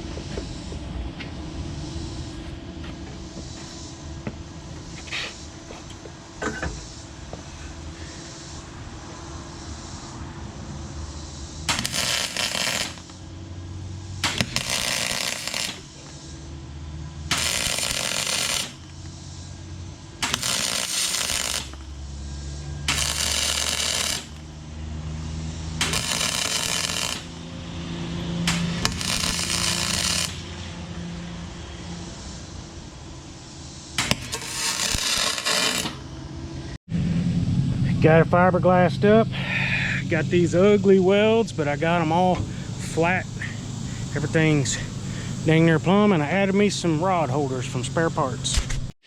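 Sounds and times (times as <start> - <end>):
steady low hum: 0.0 - 48.5
crackling welding arc: 11.2 - 27.8, 28.4 - 30.9, 33.8 - 36.2.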